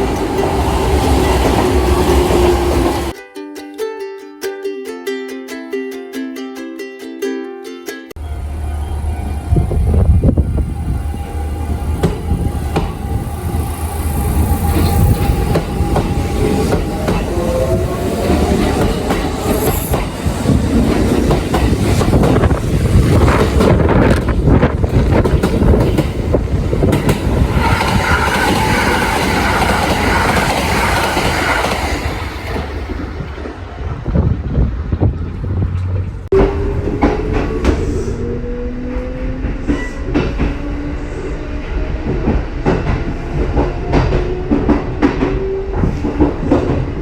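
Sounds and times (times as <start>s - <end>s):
train motor whine: 8.2s - 20.2s
wheels clacking over rail joints: 8.2s - 33.8s, 41.9s - 47.0s.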